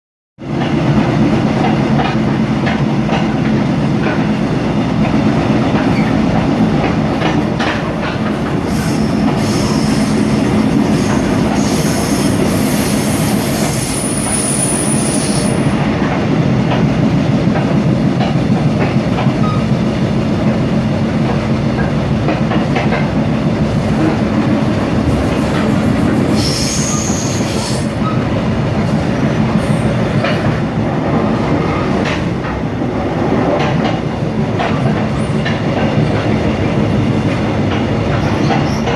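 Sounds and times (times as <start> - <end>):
train rumbling along track: 0.4 - 38.9
wheels clacking over rail joints: 5.0 - 12.5
high-pitched wheel squeals: 26.4 - 27.9.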